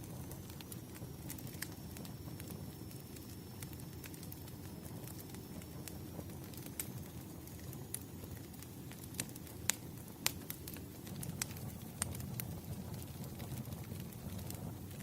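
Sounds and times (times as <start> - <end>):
low rush of flame: 0.0 - 15.0
wood fire crackling and popping: 0.0 - 15.0.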